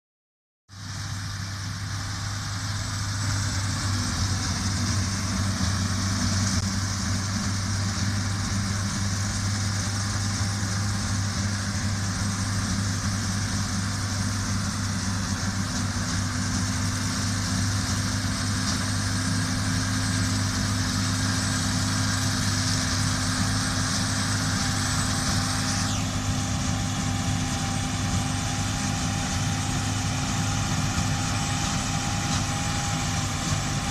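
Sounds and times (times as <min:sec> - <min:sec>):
combine harvester engine drone: 0:00.7 - 0:33.9
high machinery hiss: 0:00.8 - 0:33.9.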